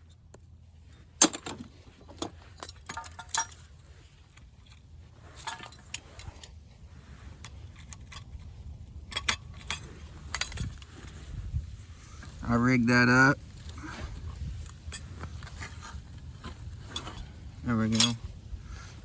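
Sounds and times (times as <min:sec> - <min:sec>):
steel sockets clinking: 0:00.9 - 0:06.6, 0:07.4 - 0:11.3, 0:14.4 - 0:18.3.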